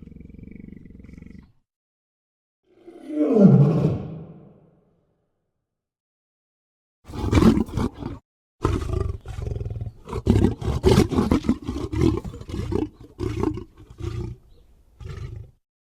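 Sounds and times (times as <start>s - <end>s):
big cat roaring: 2.7s - 4.6s, 7.1s - 14.4s, 15.0s - 15.6s.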